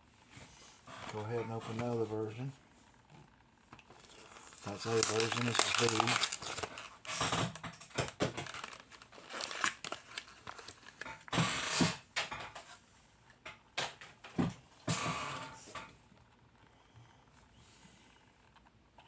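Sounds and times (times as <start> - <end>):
packaging rustling: 3.8 - 11.3
packaging clicks and scrapes: 3.8 - 12.0.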